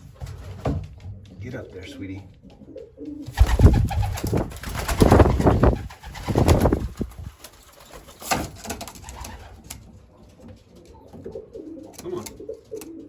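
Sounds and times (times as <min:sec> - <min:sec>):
pigeons cooing: 0:01.4 - 0:13.0
loud rustling bursts: 0:03.3 - 0:09.5.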